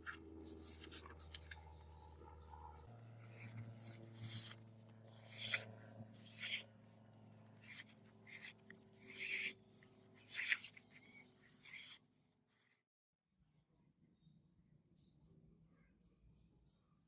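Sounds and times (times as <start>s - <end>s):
file scraping metal: 0.0s - 2.5s, 3.2s - 6.7s, 7.6s - 9.6s, 10.2s - 12.0s
low steady hum: 0.0s - 11.8s.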